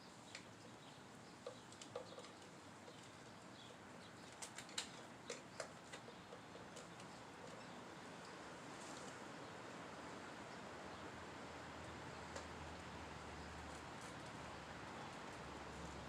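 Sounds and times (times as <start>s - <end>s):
low steady hiss: 6.8s - 16.0s.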